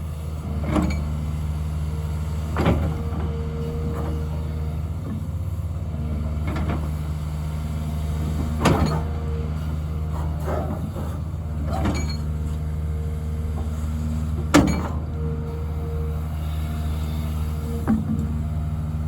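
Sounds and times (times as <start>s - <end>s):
excavator diesel engine running: 0.0s - 19.0s
hydraulic whine: 0.0s - 19.0s.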